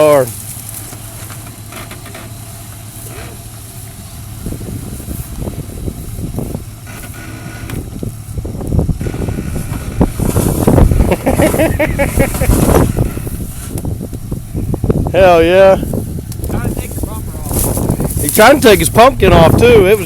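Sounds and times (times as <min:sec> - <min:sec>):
off-road engine running: 0:00.0 - 0:20.0
axle scraping over rocks: 0:09.0 - 0:13.9, 0:16.4 - 0:19.0.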